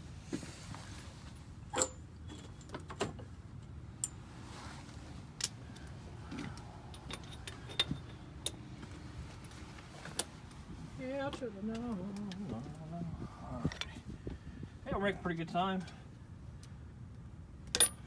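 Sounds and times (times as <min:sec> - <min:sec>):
metal clinks and knocks: 0:05.4 - 0:05.9, 0:06.9 - 0:08.6, 0:17.7 - 0:18.0.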